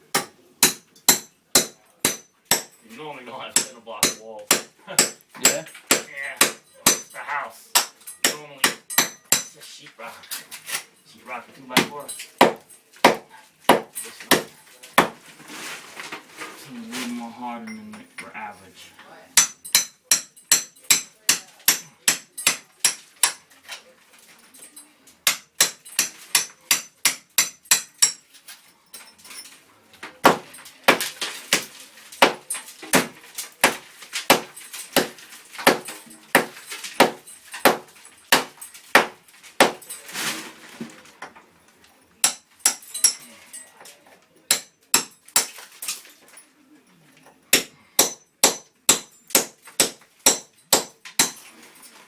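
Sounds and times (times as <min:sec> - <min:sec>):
hammer chipping cinder block: 0:00.1 - 0:02.8, 0:03.5 - 0:09.6, 0:11.8 - 0:15.2, 0:19.4 - 0:23.4, 0:25.2 - 0:28.2, 0:30.2 - 0:40.0, 0:42.2 - 0:43.2, 0:44.5 - 0:45.6, 0:47.5 - 0:51.4.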